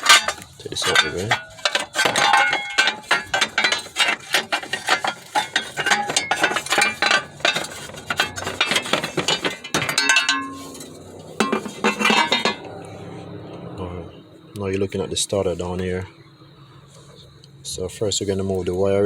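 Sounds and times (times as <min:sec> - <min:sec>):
sheet metal clinking and rattling: 0:00.0 - 0:13.8.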